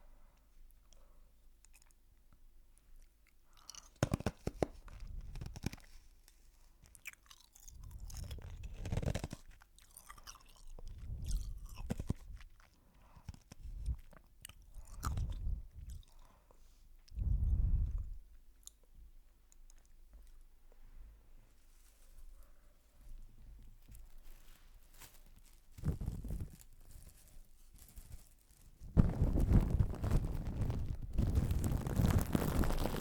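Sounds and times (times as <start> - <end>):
close crunching: 24.2 - 33.0.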